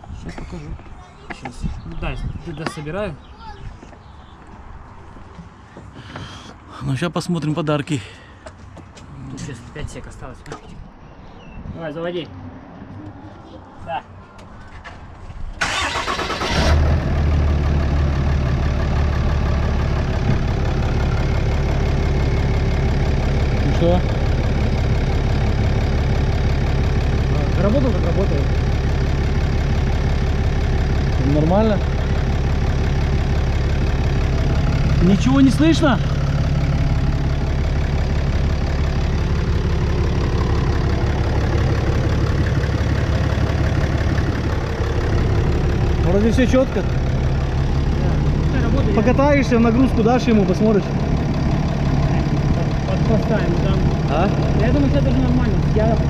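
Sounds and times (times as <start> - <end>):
starter cranking engine: 15.6 - 17.1
diesel engine idling: 15.6 - 56.0.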